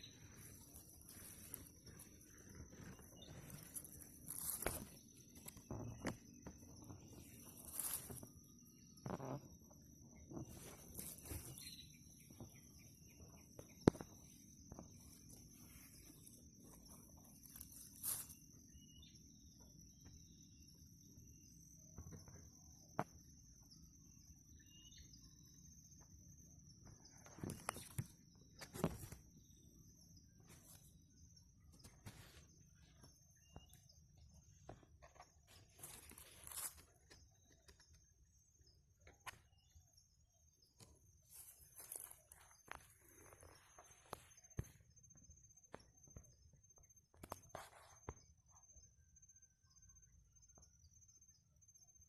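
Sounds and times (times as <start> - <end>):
faint high whine: 0.0 - 45.9.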